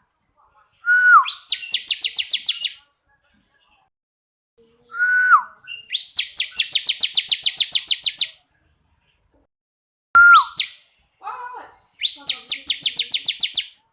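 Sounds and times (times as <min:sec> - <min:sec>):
bird singing trills and whistles: 0:00.9 - 0:02.8, 0:04.9 - 0:08.4, 0:10.2 - 0:10.8, 0:12.0 - 0:13.8.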